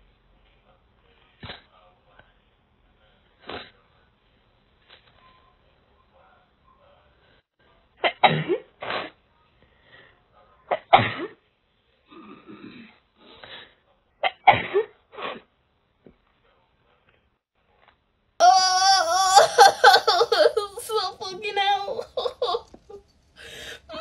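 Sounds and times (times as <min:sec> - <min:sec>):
quiet breaths: 0:00.0 - 0:07.9, 0:09.2 - 0:10.6, 0:22.7 - 0:24.0.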